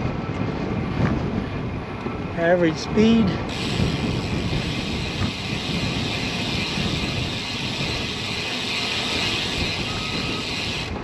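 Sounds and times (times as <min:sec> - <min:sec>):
wind rushing on microphone: 0:00.0 - 0:11.0.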